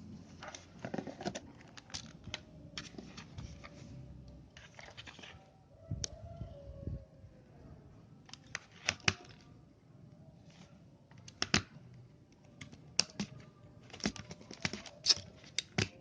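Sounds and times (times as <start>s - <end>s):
keyboard and mouse clicks: 11.1s - 11.8s, 12.4s - 16.0s.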